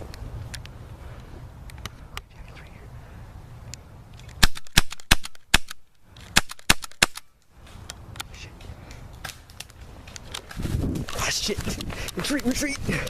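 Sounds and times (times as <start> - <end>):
airsoft pistol shots: 4.4 - 5.8, 6.4 - 7.3.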